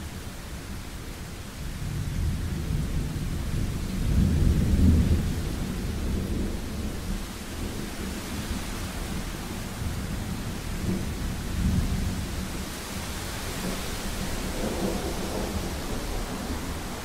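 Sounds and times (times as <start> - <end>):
steady rain: 0.0 - 17.0
thunder rumbling: 13.6 - 17.0.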